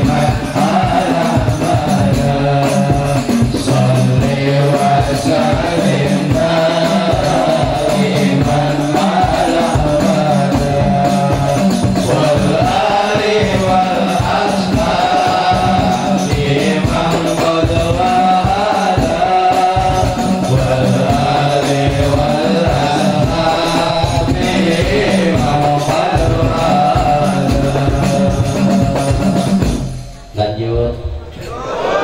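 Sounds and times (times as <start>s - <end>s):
frame drum with jingles: 0.0s - 30.4s
person chanting a melody: 3.8s - 29.0s.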